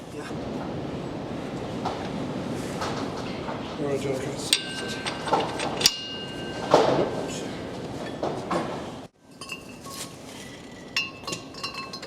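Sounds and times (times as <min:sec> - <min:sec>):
steel tools clinking: 0:04.4 - 0:08.3, 0:09.3 - 0:12.0.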